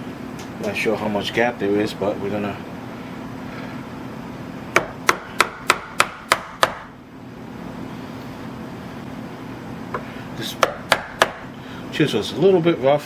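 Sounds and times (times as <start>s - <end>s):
hammer tapping a chisel into wood: 4.7s - 6.9s, 10.6s - 11.4s.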